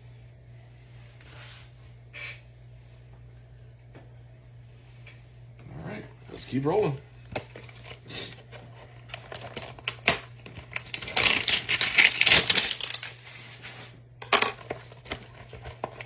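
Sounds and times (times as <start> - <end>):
faint electrical hum: 0.0 - 16.0
packaging tearing and crinkling: 9.0 - 13.9.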